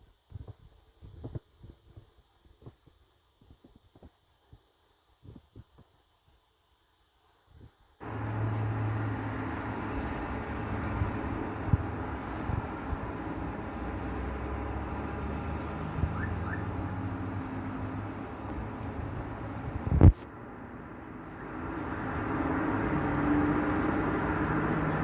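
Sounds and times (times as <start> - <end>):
engine drone with rushing noise: 8.0 - 25.0.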